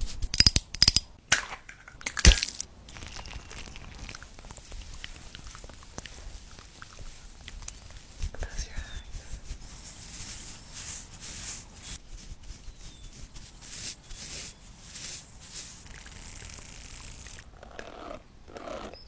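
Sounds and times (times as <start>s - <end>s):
rustling swishes: 4.2s - 17.4s
faint bird chirps: 8.5s - 9.3s, 12.6s - 13.2s.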